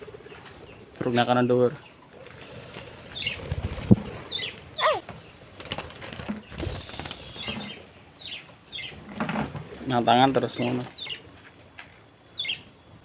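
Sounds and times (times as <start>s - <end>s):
parakeets chirping: 1.7s - 5.6s, 6.4s - 9.1s, 10.0s - 11.3s, 12.4s - 12.7s
wing flaps: 2.2s - 7.7s.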